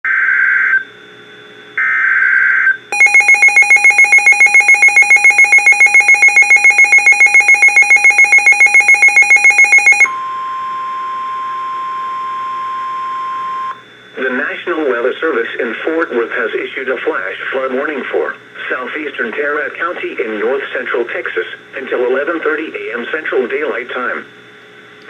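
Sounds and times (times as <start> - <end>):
electronic alarm beeping rapidly: 3.0 - 10.2
steady alarm tone: 3.0 - 13.8.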